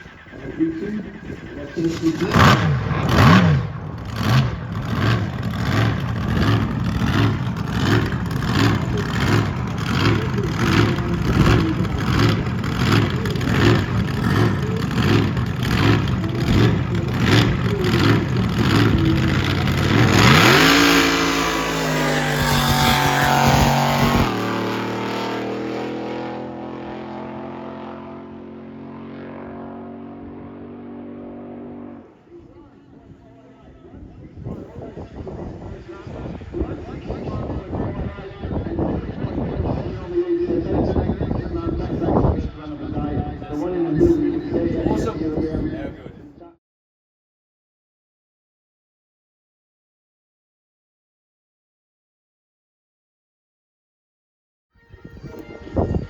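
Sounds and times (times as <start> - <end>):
boat engine idling and revving: 0.0 - 31.9.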